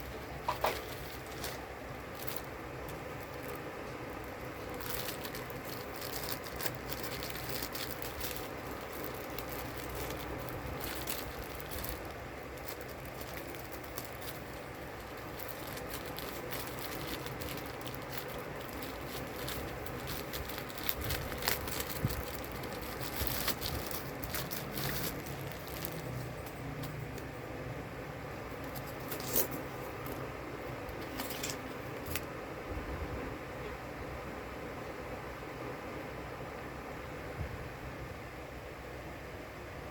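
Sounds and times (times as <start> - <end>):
plastic packaging clicks and crinkles: 0.0 - 27.3, 28.5 - 32.3
steady low hum: 0.0 - 39.9.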